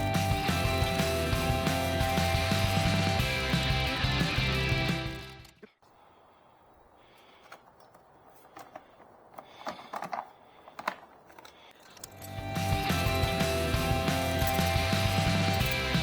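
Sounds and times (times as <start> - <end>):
background music: 0.0 - 5.6, 12.1 - 16.0.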